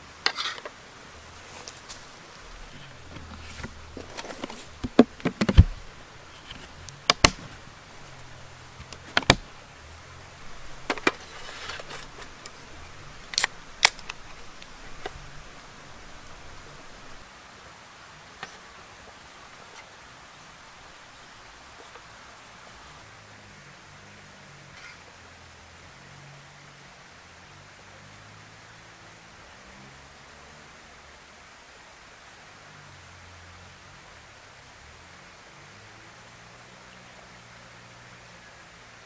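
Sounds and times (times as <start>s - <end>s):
light rustling: 0.2s - 17.2s.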